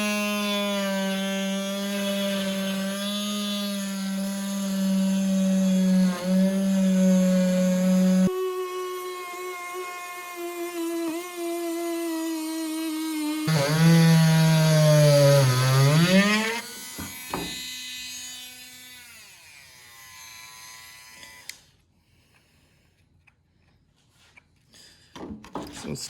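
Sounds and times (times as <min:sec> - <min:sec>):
rotary tool whining: 0:01.8 - 0:21.7.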